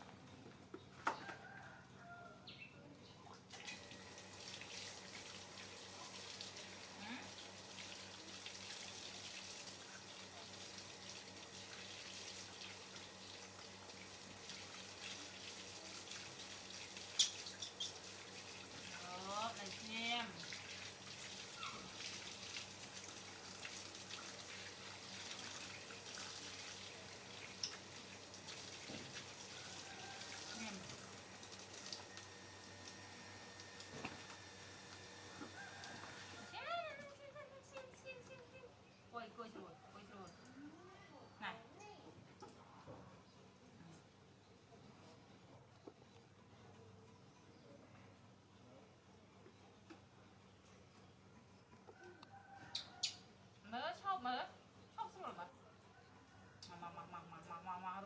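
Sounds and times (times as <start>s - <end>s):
tap water running: 3.5s - 37.3s.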